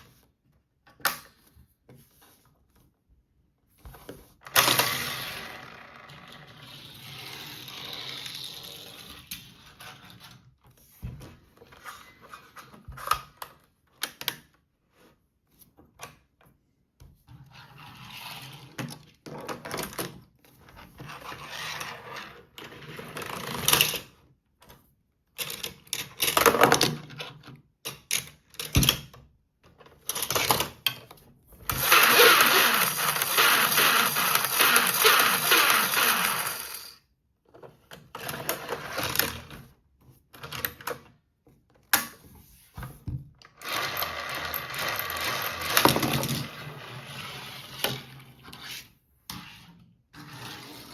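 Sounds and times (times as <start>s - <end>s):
plastic toy clicking and rattling: 31.7s - 37.0s, 43.5s - 46.5s.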